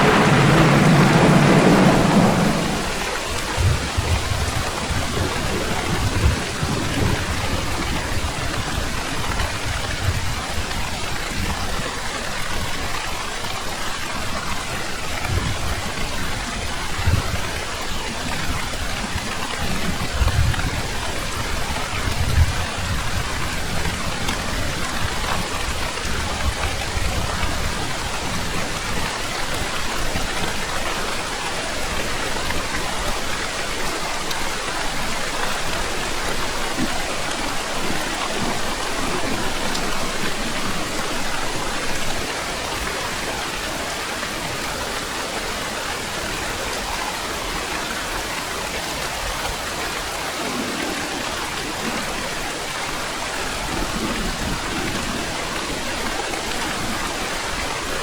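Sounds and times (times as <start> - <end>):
thunder rumble: 0.0 - 8.6
heavy rainfall: 0.0 - 58.0.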